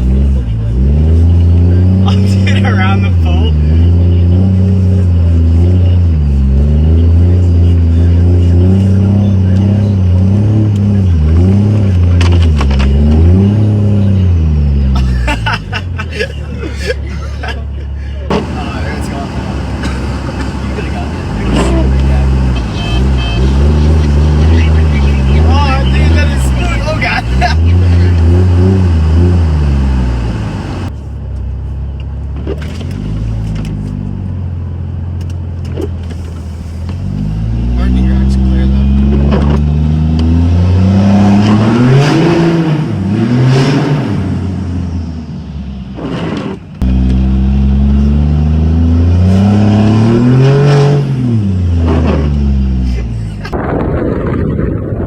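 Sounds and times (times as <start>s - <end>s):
voices: 0.0s - 29.5s, 37.6s - 39.6s
diesel pickup engine revving: 0.0s - 55.0s.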